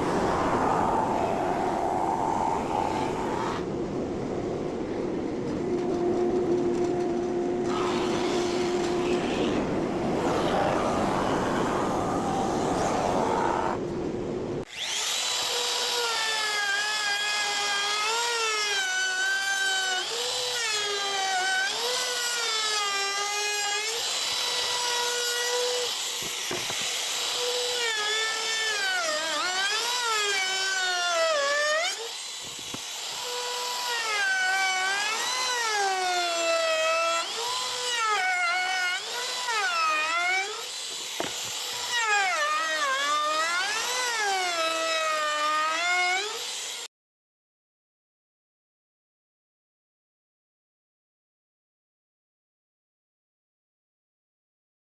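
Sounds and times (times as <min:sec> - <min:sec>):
power tool cutting wood: 0:05.5 - 0:13.2, 0:14.6 - 0:46.9.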